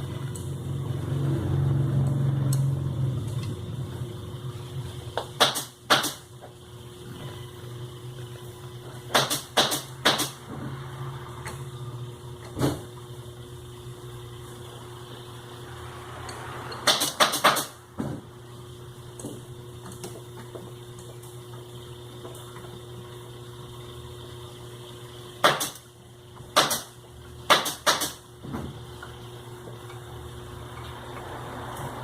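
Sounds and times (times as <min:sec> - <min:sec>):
sharp clicks and knocks: 0:16.7 - 0:18.2, 0:27.5 - 0:28.7.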